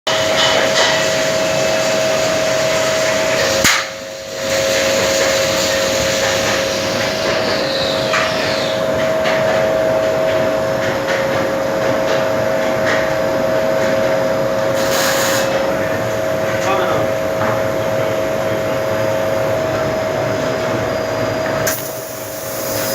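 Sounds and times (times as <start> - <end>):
laser cutter rushing noise: 14.7 - 16.0.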